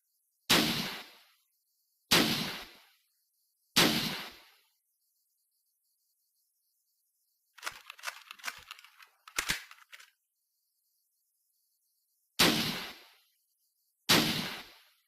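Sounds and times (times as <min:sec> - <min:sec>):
rifle bolt metallic clicks: 0:07.6 - 0:10.1
loud rifle shot: 0:14.1 - 0:14.8.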